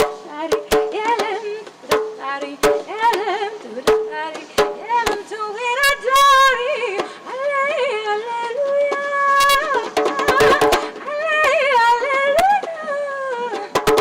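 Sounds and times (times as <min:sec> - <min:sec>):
drum strikes: 0:00.0 - 0:07.3, 0:09.0 - 0:12.0, 0:13.7 - 0:14.0
person singing: 0:00.0 - 0:14.0.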